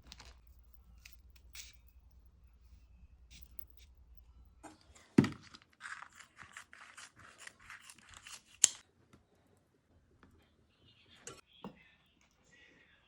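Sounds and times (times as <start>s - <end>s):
knife cutting strokes: 5.8s - 8.8s.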